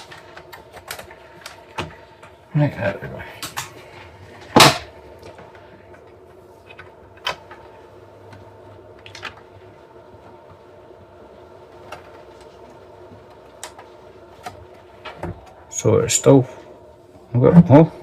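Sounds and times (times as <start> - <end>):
faint electrical hum: 0.0 - 18.0.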